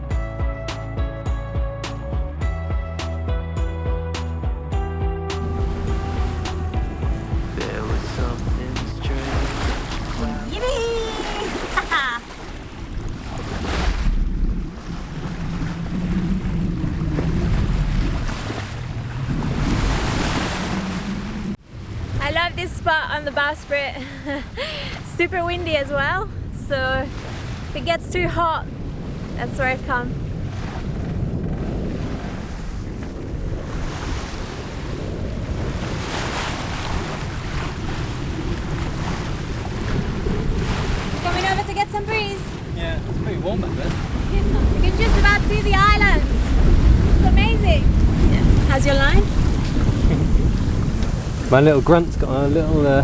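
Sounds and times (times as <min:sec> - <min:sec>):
wind: 0:00.0 - 0:53.0
rushing water: 0:05.3 - 0:53.0
wind buffeting microphone: 0:05.3 - 0:53.0
steady low hum: 0:05.4 - 0:10.7.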